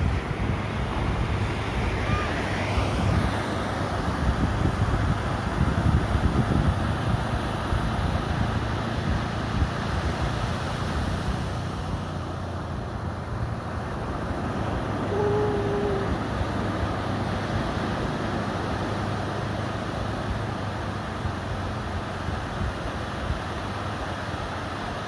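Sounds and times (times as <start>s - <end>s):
wind rumbling on microphone: 0.0s - 24.3s
waves breaking on a beach: 0.0s - 25.0s.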